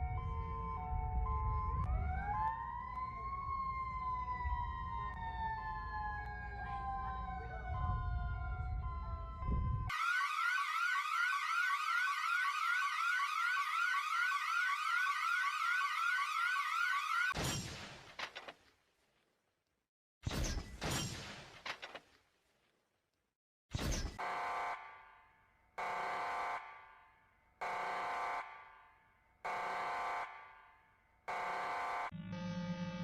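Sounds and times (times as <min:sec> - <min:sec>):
siren winding up and down: 0:00.0 - 0:17.4, 0:31.3 - 0:33.0
sweeping electronic alarm tone: 0:31.3 - 0:33.0.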